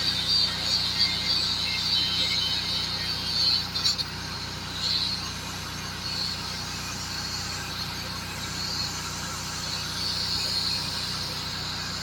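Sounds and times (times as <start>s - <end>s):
engine idling: 0.0s - 12.0s
hiss: 4.8s - 12.0s.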